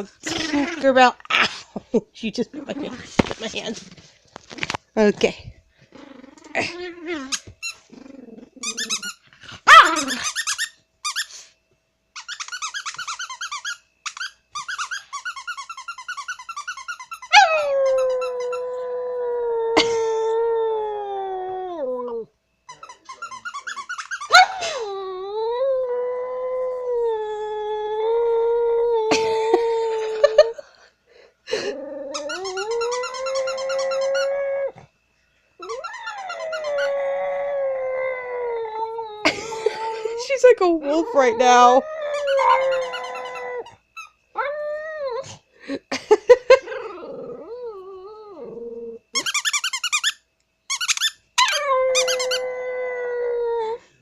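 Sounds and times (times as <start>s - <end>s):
squeaky toy squeaking: 8.6s - 9.2s, 9.9s - 11.3s, 12.2s - 18.4s, 22.7s - 24.4s, 32.2s - 34.3s, 49.2s - 52.4s
dog howling: 17.3s - 22.3s, 31.6s - 34.9s, 35.6s - 43.8s, 46.7s - 49.1s, 51.4s - 53.8s.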